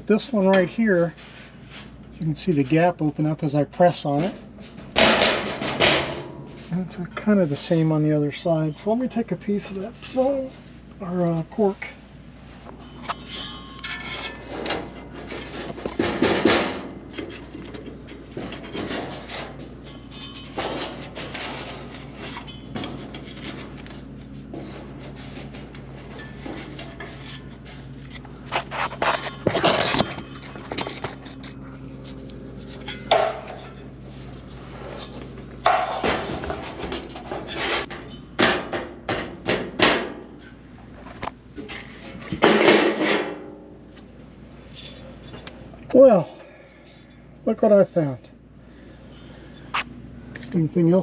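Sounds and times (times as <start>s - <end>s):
knocks and scrapes on sheet metal: 4.2s - 6.7s, 13.0s - 27.8s, 28.4s - 31.5s, 34.9s - 40.5s, 41.6s - 43.4s.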